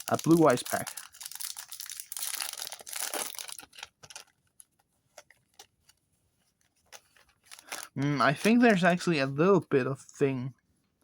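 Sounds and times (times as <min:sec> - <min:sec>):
foil wrapper crinkling and tearing: 0:00.0 - 0:05.7, 0:07.0 - 0:08.6.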